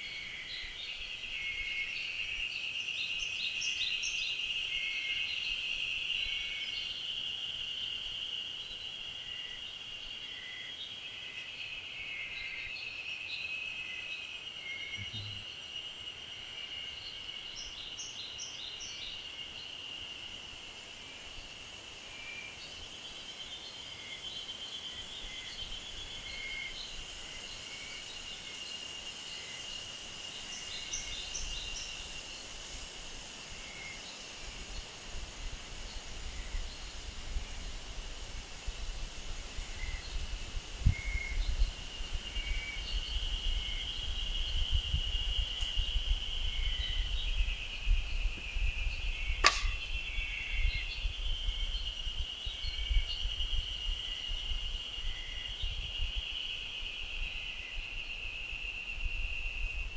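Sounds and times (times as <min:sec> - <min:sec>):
bird chirps: 0:14.8 - 0:15.6
wind rumble on microphone: 0:34.5 - 0:59.9
sharp crack: 0:49.4 - 0:50.0.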